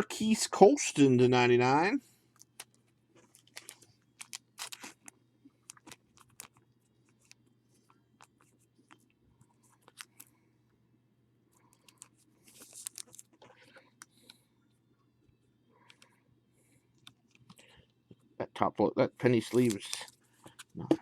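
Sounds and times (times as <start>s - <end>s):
low steady hum: 0.0s - 21.0s
trading cards being handled: 11.7s - 14.4s, 19.3s - 21.0s.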